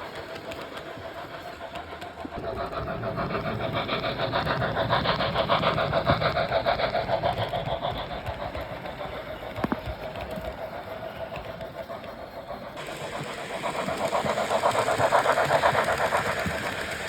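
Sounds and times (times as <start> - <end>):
model train clattering on track: 0.0 - 17.0.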